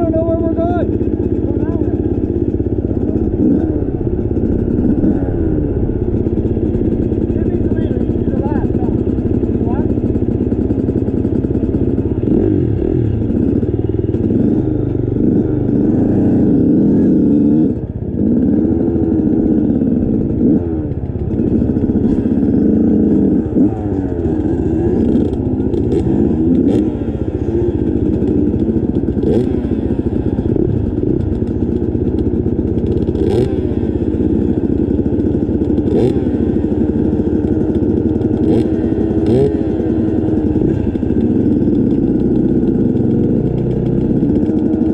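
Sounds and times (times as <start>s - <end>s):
motorcycle engine revving: 0.0s - 44.9s
sharp clacks: 40.7s - 44.9s.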